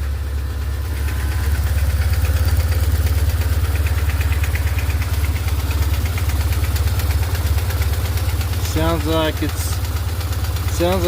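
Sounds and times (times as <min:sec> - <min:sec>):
motorcycle engine idling: 0:00.0 - 0:11.0
rapid ticking knock: 0:01.7 - 0:09.1.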